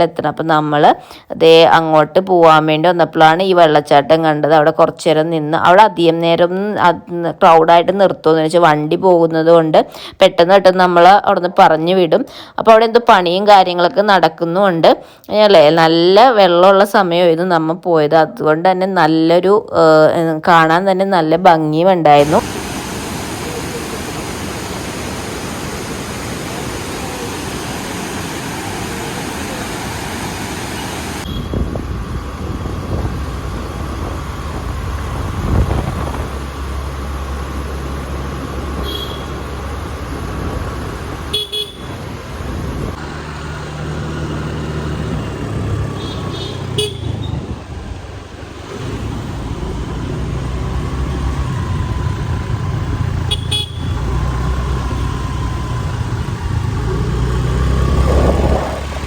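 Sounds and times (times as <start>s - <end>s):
waterfall rushing: 22.2s - 31.3s
vehicle engine drone: 22.2s - 59.0s.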